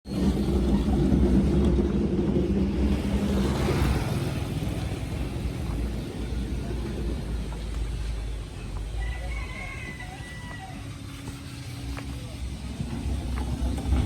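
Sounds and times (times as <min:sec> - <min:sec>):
vehicle engine rumbling: 0:00.0 - 0:14.0.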